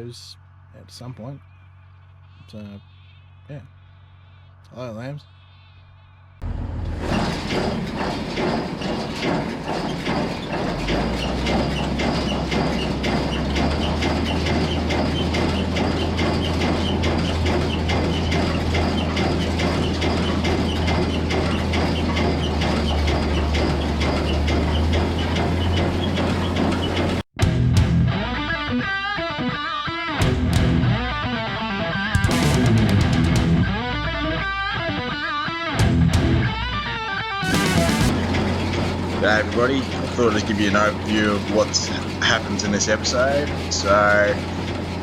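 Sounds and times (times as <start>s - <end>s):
baler mechanical clatter: 6.4s - 27.2s, 37.4s - 45.0s
tractor engine drone: 6.4s - 27.3s, 32.2s - 35.2s, 35.8s - 45.0s.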